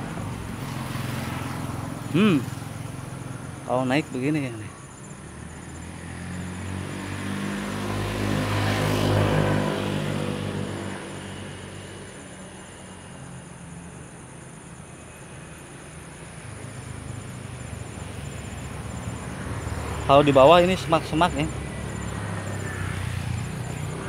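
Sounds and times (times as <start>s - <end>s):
motor vehicle passing: 5.4s - 12.3s, 16.8s - 24.0s.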